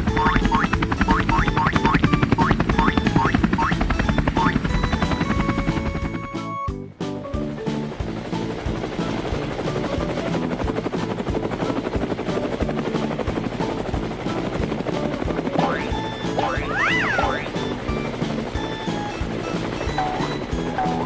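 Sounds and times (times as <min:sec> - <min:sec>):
upbeat background music: 0:00.0 - 0:21.0
rising whistle-like glides: 0:00.1 - 0:06.8, 0:13.7 - 0:21.0.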